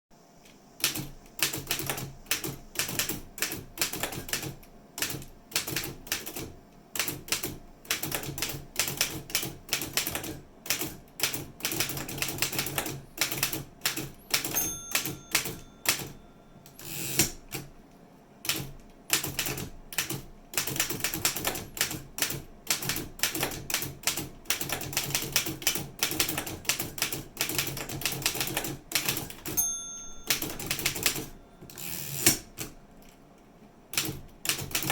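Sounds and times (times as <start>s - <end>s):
typewriter keys striking: 0.8s - 16.2s, 18.5s - 32.8s, 34.0s - 34.9s
typewriter carriage bell ringing: 14.4s - 17.3s, 29.4s - 32.2s.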